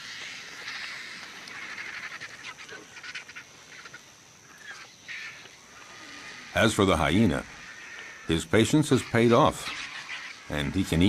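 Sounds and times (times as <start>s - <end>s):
animal squawking and chattering: 4.6s - 11.0s.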